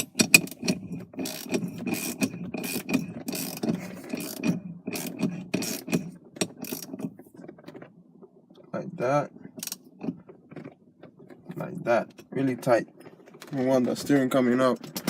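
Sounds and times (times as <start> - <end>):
ratchet wrench clicking: 0.0 - 7.0.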